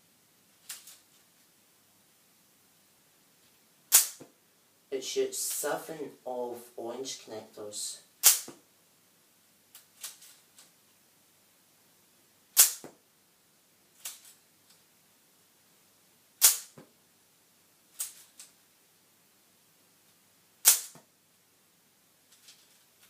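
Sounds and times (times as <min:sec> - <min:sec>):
toy gun plastic snaps: 0:12.6 - 0:12.9, 0:16.4 - 0:16.8, 0:20.6 - 0:21.0.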